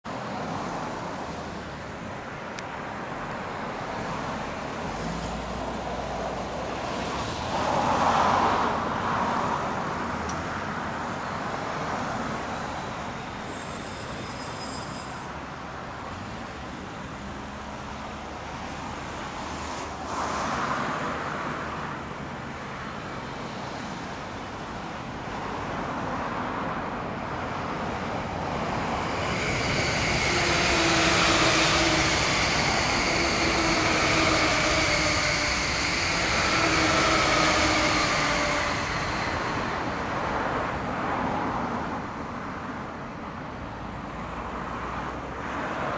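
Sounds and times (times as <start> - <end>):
road traffic: 0.0 - 45.9
vehicles passing: 0.0 - 45.9
electric train approaching: 11.0 - 21.0, 27.8 - 41.4.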